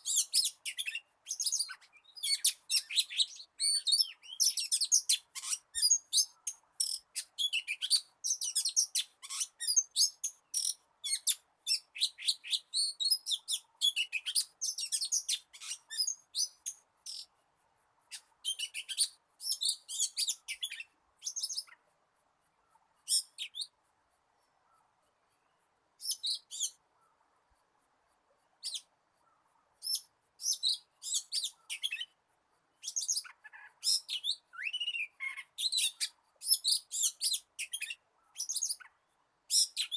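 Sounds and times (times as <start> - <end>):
bird singing whistles and chirps: 0.0 - 17.3, 18.1 - 21.8, 23.1 - 23.7, 26.0 - 26.8, 29.8 - 32.2, 32.8 - 38.9, 39.5 - 39.9.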